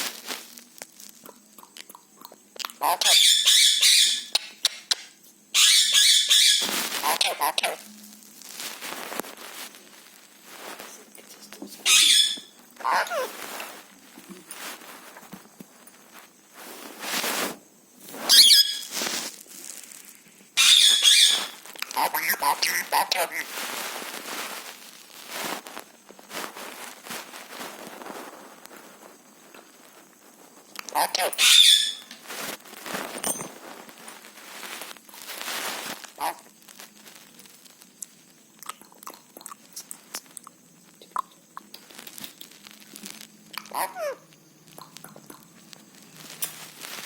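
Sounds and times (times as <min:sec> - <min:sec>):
parrot crunching food: 0:00.1 - 0:15.4, 0:18.3 - 0:28.9, 0:30.7 - 0:47.0
parrot screeching: 0:02.8 - 0:07.8, 0:11.8 - 0:13.4, 0:18.3 - 0:18.9, 0:20.6 - 0:23.5, 0:30.9 - 0:32.1, 0:36.2 - 0:36.4, 0:43.7 - 0:44.2.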